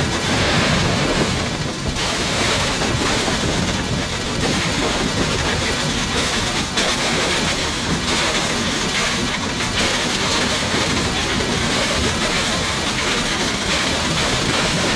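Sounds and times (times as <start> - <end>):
steady rushing noise: 0.0 - 5.8.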